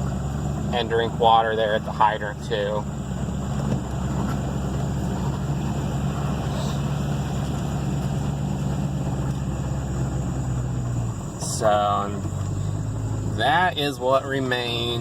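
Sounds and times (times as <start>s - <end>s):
truck engine hum: 0.0s - 15.0s.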